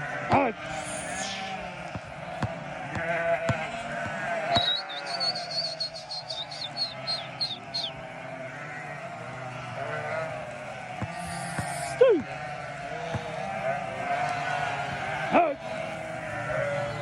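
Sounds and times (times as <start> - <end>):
sheep bleating: 0.0 - 17.0
high chirps: 4.6 - 7.9.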